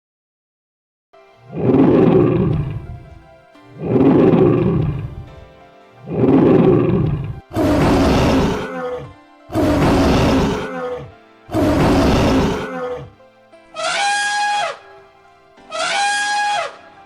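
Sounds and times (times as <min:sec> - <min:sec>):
faint background music: 0:01.2 - 0:17.0
big cat roaring: 0:01.5 - 0:03.2, 0:03.8 - 0:05.4, 0:06.0 - 0:13.2.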